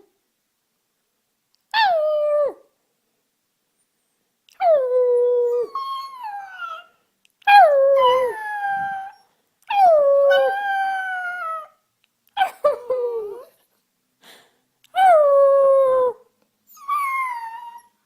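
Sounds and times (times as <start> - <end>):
puppy howling: 5.2 - 6.9, 7.6 - 11.8, 16.8 - 17.9.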